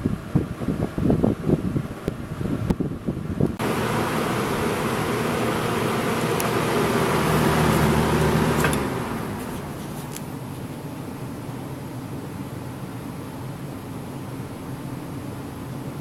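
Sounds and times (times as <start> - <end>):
box fan running: 0.0 - 16.0
fan switch click: 6.2 - 6.7, 7.6 - 10.3.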